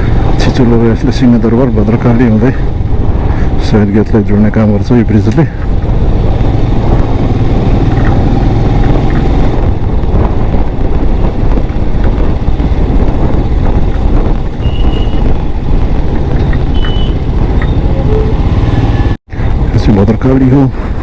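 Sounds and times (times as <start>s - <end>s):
road traffic rumble: 0.0s - 21.0s
short high beeps: 16.4s - 19.2s.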